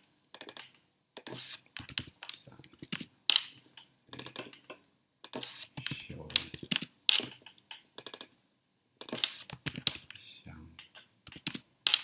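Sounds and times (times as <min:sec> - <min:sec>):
typing on keyboard: 0:01.8 - 0:03.5, 0:05.6 - 0:07.3, 0:09.0 - 0:10.3, 0:11.2 - 0:12.0.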